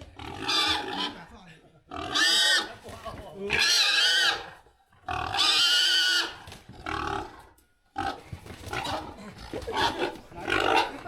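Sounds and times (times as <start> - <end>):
pig squealing: 0.2 - 1.2, 1.9 - 2.8, 3.5 - 4.5, 5.1 - 6.4.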